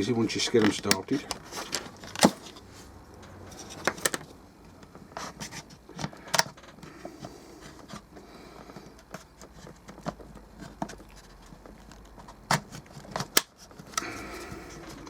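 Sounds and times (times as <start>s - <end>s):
sharp plastic clicks: 0.5s - 1.4s, 6.0s - 6.6s
tool scraping plastic: 5.0s - 15.0s.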